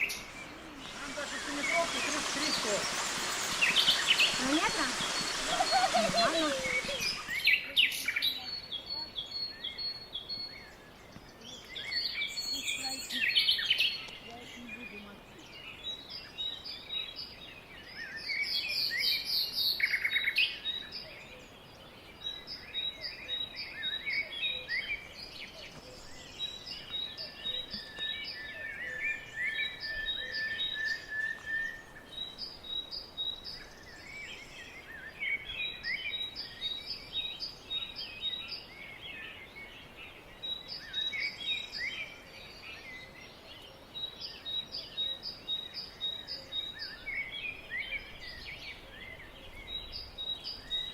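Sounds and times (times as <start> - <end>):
bird trilling: 0.0 - 7.6
songbirds singing: 0.0 - 50.9.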